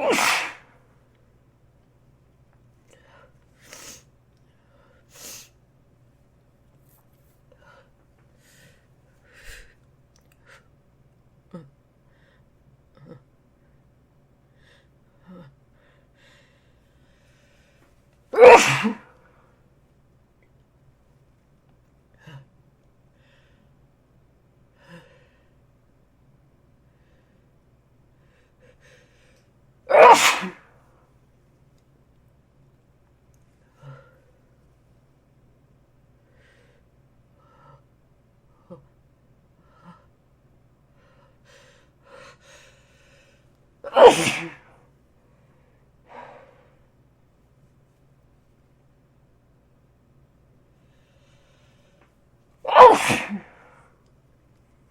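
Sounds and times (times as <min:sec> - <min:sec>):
person sniffing: 0:00.0 - 0:00.7, 0:03.6 - 0:04.1, 0:05.1 - 0:05.6, 0:29.9 - 0:30.6
person sneezing: 0:00.0 - 0:00.8, 0:18.4 - 0:19.2, 0:29.9 - 0:30.8, 0:43.9 - 0:44.8, 0:52.7 - 0:53.9
person gasping breaths: 0:41.0 - 0:44.8, 0:46.0 - 0:46.9.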